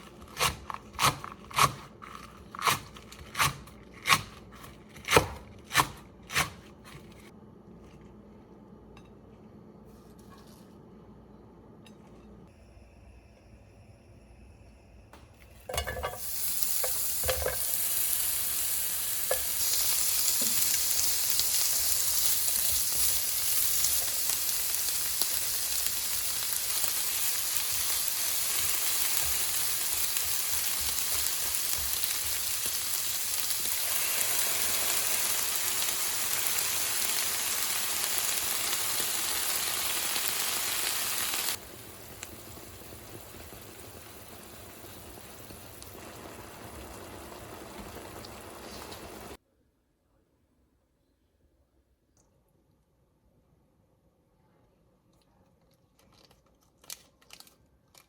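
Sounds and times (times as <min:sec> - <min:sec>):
food sizzling in a hot pan: 0:15.8 - 0:49.4.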